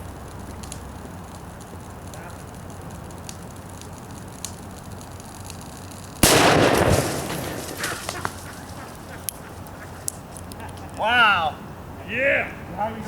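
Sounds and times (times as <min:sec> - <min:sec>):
faint clicks: 0:00.0 - 0:11.0
loud bang: 0:06.2 - 0:08.6.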